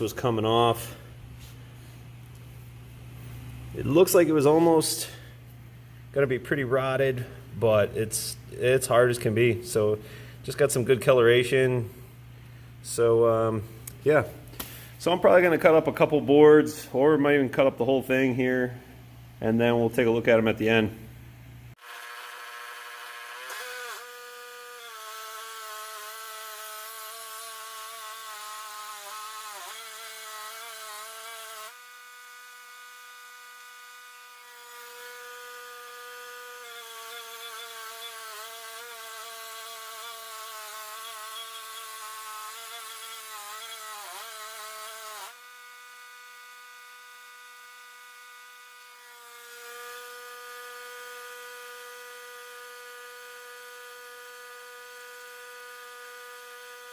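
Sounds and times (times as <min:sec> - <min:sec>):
bandsaw mill cutting log: 0:21.8 - 0:56.9.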